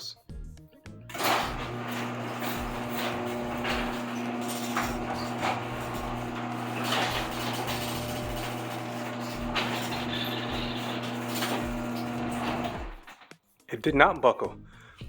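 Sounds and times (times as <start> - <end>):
garage door opener humming: 1.1 - 13.2
garage door clunking: 1.1 - 13.3.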